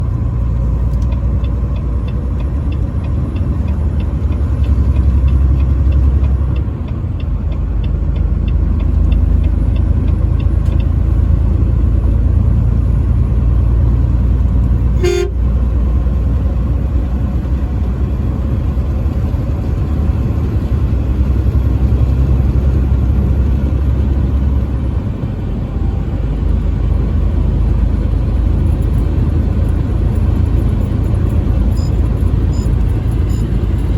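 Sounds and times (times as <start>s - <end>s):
truck driving on highway: 0.0s - 33.9s
light even ticking: 0.8s - 12.1s
truck horn toot: 14.9s - 15.5s.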